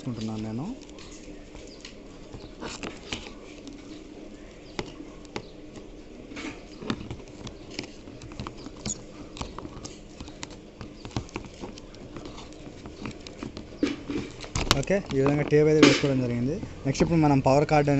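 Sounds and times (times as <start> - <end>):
tape crackling as it unrolls: 0.0 - 4.1.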